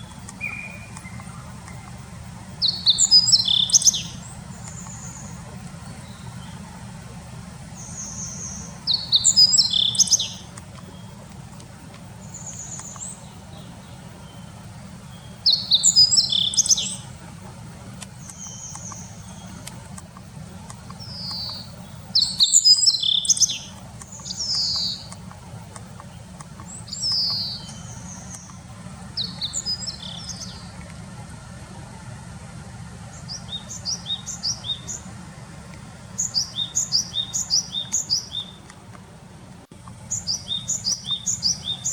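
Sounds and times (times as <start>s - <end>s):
thin high bird calls: 0.0s - 30.9s, 33.1s - 35.3s, 35.9s - 38.8s, 39.9s - 41.9s
birds chirping: 0.0s - 41.9s
steady low rumble: 0.0s - 41.9s.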